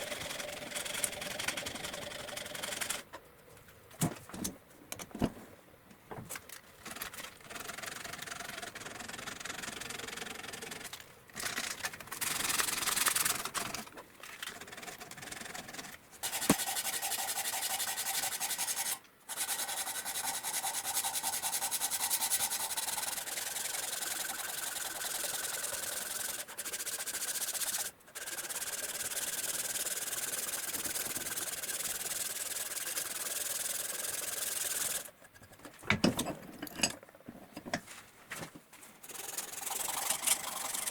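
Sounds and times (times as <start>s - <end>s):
abrasive sanding on a knife: 16.2s - 35.1s, 39.0s - 40.9s.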